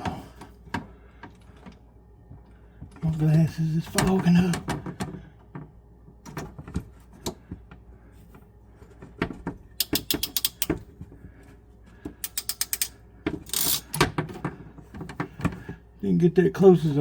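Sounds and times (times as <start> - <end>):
crimp tool ratcheting clicks: 9.8 - 10.7, 12.2 - 13.9.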